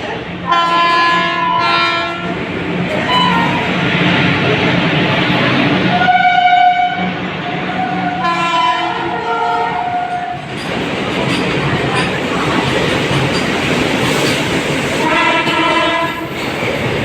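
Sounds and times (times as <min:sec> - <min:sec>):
train wheels rumbling on track: 0:00.0 - 0:17.0
train horn blasts: 0:00.5 - 0:02.3, 0:03.0 - 0:03.7, 0:05.9 - 0:07.2, 0:07.8 - 0:10.3, 0:15.0 - 0:16.4.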